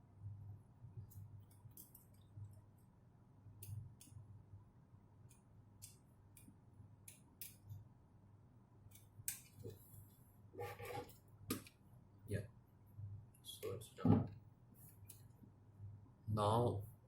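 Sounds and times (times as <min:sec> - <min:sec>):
light clicks of small screw turning: 0:03.6 - 0:04.2.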